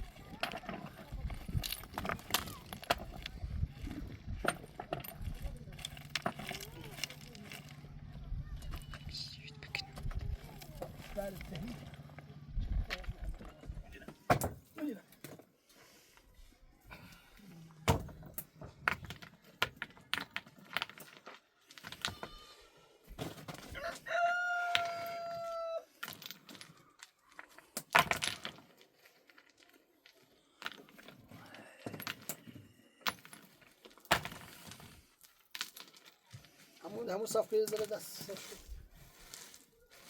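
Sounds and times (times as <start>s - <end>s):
rooster crowing: 23.8s - 25.9s.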